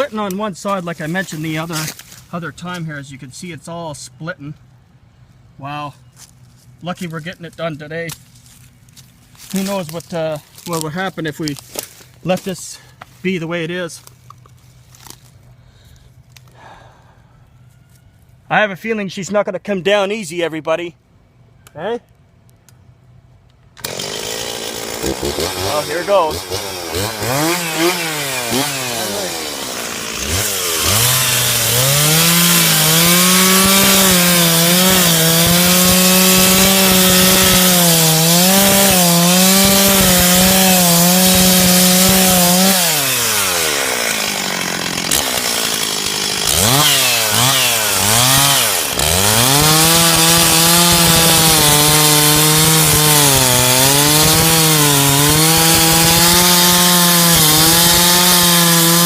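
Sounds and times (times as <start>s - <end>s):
chainsaw cutting wood: 1.2s - 2.2s, 23.8s - 59.0s.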